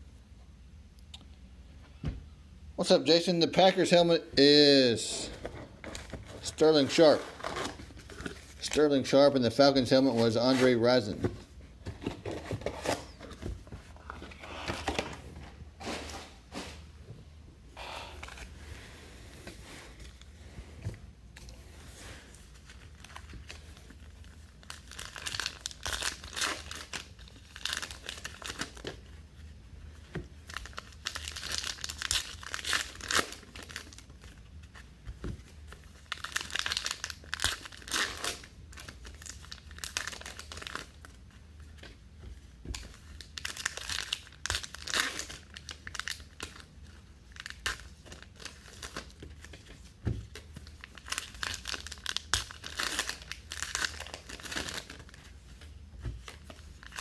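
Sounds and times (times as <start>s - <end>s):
wrappers tearing and crinkling: 22.5s - 29.1s, 30.4s - 34.4s, 35.7s - 41.3s, 42.7s - 57.0s.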